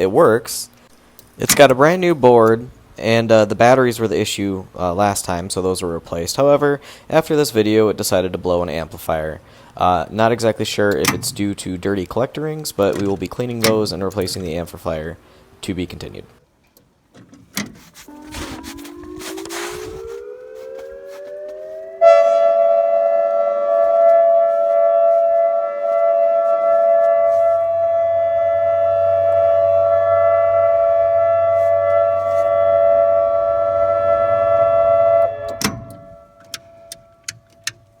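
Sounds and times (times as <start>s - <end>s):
electronic warning siren: 18.0s - 38.0s.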